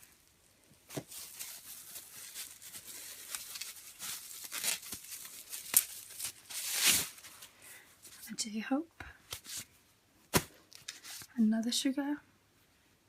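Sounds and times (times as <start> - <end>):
packaging crinkling and rustling: 0.0 - 8.2, 10.3 - 11.3.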